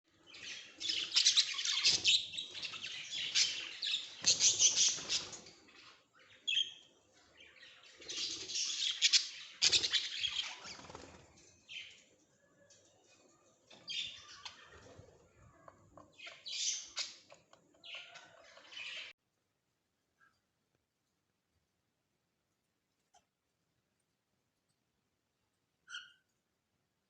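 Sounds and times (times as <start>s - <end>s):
parakeets screeching and chattering: 0.3s - 12.0s, 13.4s - 19.1s
wing flapping: 10.5s - 11.3s
parakeet squawk: 25.9s - 26.3s.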